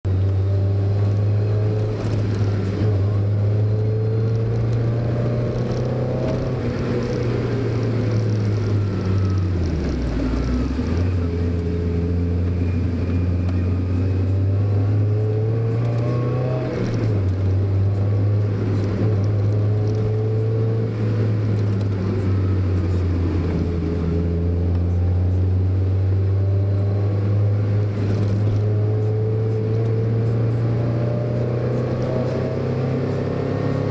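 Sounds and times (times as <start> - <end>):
car engine while driving: 0.0 - 33.9.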